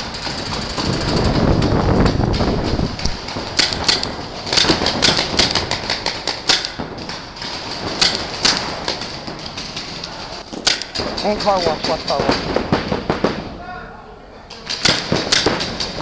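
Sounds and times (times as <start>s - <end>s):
paintball markers popping: 2.3s - 6.8s.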